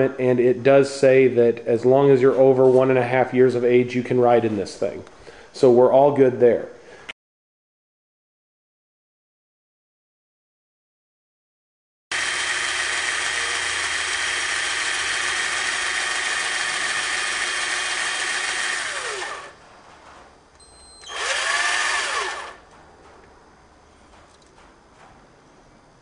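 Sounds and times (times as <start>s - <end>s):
power drill whining: 12.1s - 19.6s, 21.0s - 22.7s.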